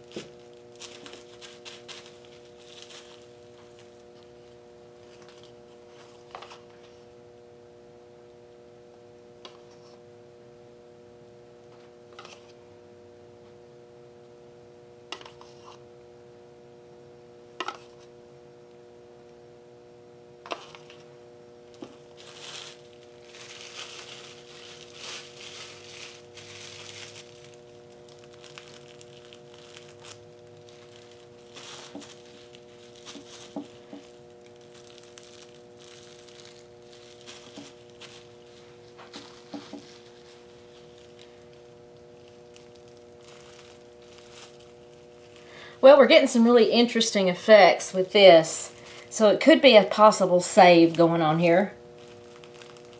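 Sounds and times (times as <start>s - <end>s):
bubble wrap crinkling: 0.0s - 7.0s, 20.5s - 47.2s, 48.1s - 52.9s
steady hum: 0.0s - 52.9s.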